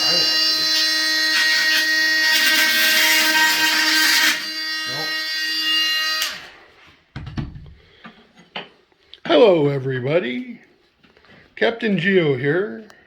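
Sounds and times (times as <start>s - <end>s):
blade cutting rasp: 0.0s - 6.6s
multi-tool high buzz: 0.0s - 6.6s.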